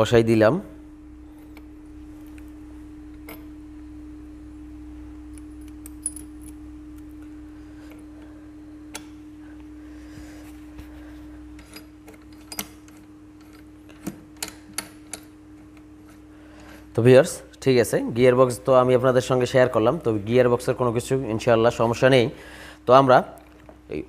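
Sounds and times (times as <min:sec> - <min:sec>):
steady hum: 0:00.0 - 0:24.0.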